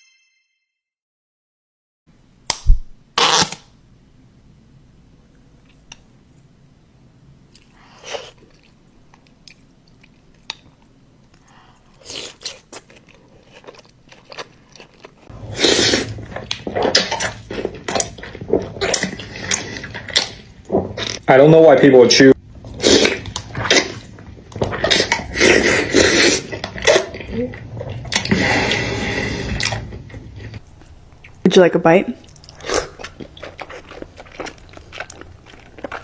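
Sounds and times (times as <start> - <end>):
wet chewing and smacking: 7.5 - 15.3, 16.2 - 21.2, 22.9 - 25.6, 32.2 - 36.0.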